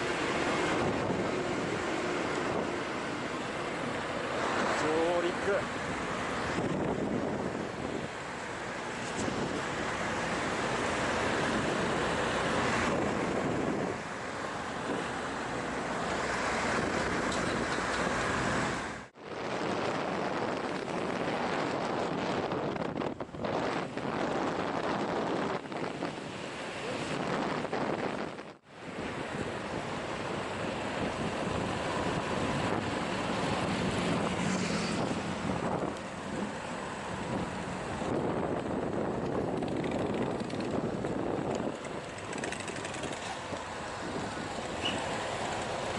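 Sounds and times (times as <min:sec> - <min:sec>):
road noise: 0:00.0 - 0:45.9
vehicle running noise: 0:00.0 - 0:45.9
wind rushing on microphone: 0:00.0 - 0:45.9.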